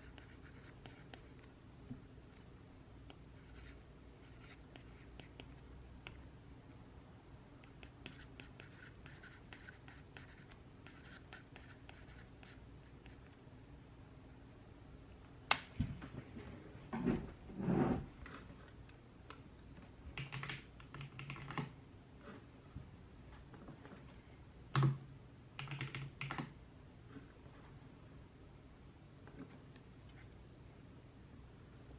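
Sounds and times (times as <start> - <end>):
typing on computer keyboard: 20.1 - 21.8, 25.6 - 26.6.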